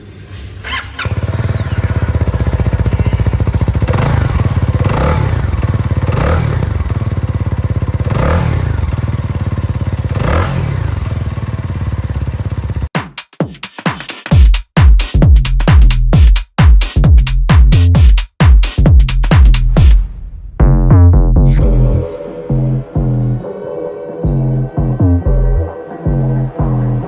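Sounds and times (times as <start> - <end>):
motorcycle engine throttle blips: 0.6 - 12.9.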